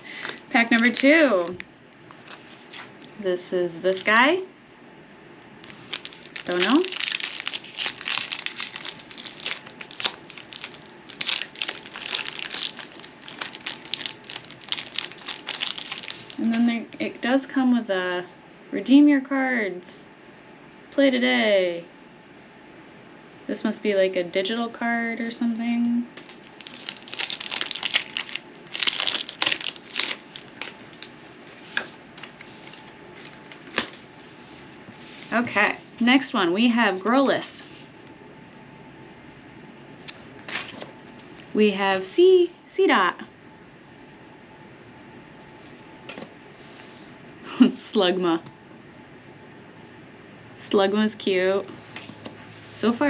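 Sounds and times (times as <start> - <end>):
foil pack crinkling: 0.1 - 1.6, 5.6 - 16.7, 26.2 - 34.7.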